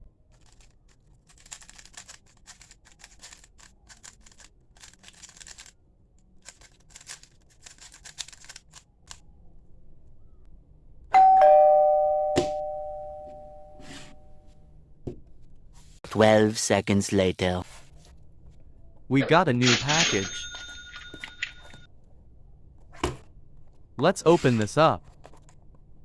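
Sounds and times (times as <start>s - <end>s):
rapid clicking: 0.3s - 9.2s
two-tone doorbell chime: 11.1s - 14.4s.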